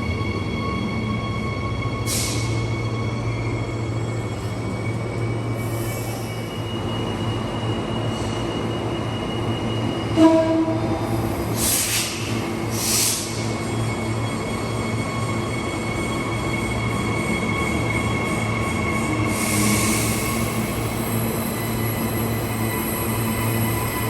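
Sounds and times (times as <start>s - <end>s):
electric train hum: 0.0s - 24.0s
air hisses: 11.5s - 13.5s.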